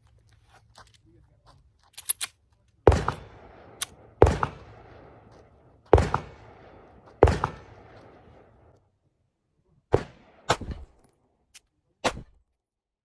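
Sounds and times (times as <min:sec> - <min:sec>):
pistol shots with echo: 0:02.8 - 0:08.8, 0:09.9 - 0:11.0, 0:12.0 - 0:12.4.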